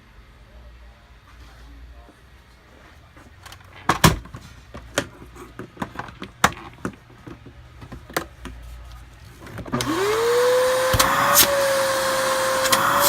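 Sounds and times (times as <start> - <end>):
vacuum motor whine: 9.6 - 13.0
vacuum cleaner handling clicks: 9.7 - 11.6, 12.6 - 13.0.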